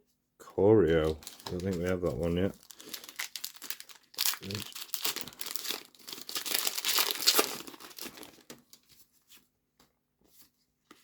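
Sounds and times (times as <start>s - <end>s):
cards being handled: 0.9s - 2.2s
wrapper tearing and crinkling: 0.9s - 8.8s.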